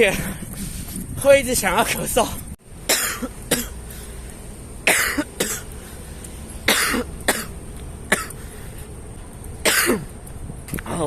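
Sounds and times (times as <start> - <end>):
man coughing: 2.9 - 3.8, 4.8 - 5.7, 6.7 - 7.5, 8.1 - 8.4, 9.6 - 10.1.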